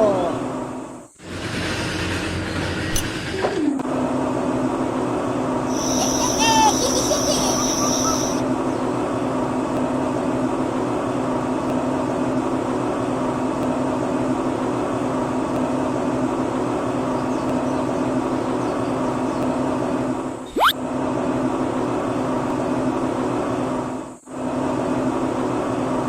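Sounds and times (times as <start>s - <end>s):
small electric motor humming: 5.7s - 8.4s.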